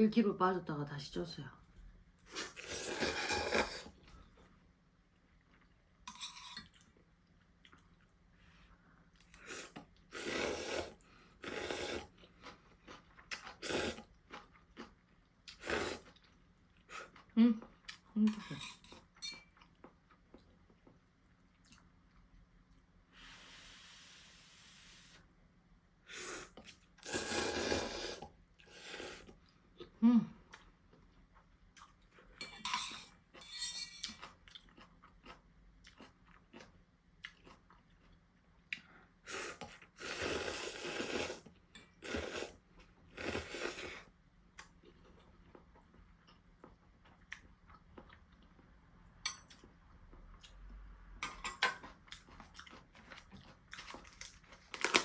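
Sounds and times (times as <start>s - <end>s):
noodles being slurped: 2.3s - 4.0s, 9.4s - 16.3s, 26.2s - 29.4s, 39.3s - 44.1s
cutlery clinking on dishes: 18.3s - 19.6s, 32.4s - 34.2s, 49.3s - 49.6s, 51.2s - 51.9s.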